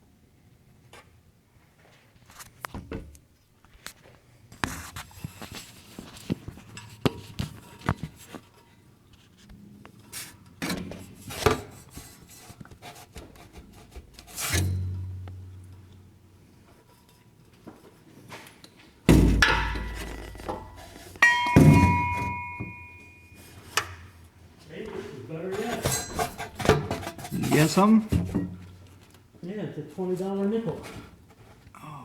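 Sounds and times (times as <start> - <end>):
scraping and rubbing: 11.0 - 15.0, 19.2 - 21.2, 25.0 - 28.9.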